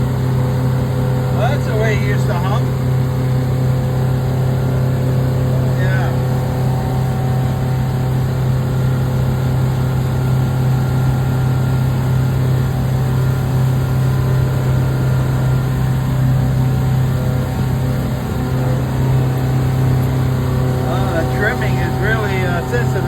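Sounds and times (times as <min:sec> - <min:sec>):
boat engine droning: 0:00.0 - 0:23.0.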